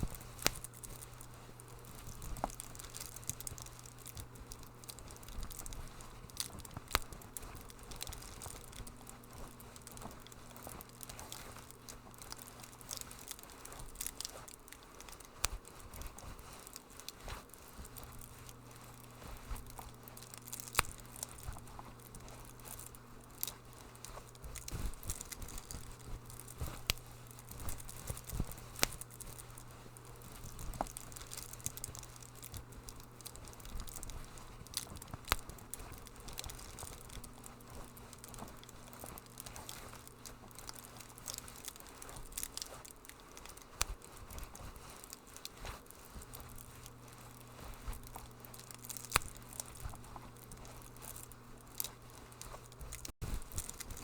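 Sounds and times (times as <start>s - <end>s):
steady low hum: 0.0s - 54.0s
wood fire crackling: 0.0s - 54.0s.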